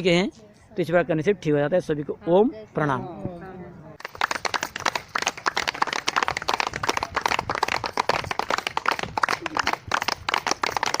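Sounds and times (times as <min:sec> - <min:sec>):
people clapping: 0:04.0 - 0:11.0.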